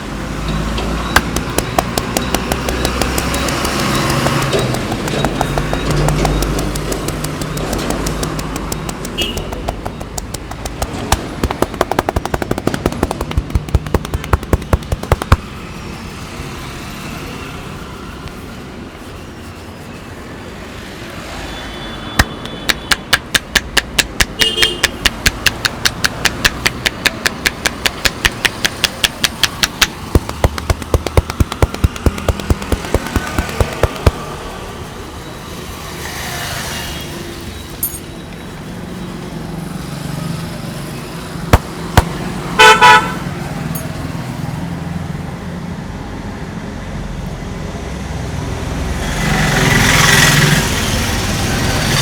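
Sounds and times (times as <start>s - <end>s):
rapid hand slaps of head massage: 1.2s - 15.6s, 22.2s - 34.3s, 41.5s - 42.2s.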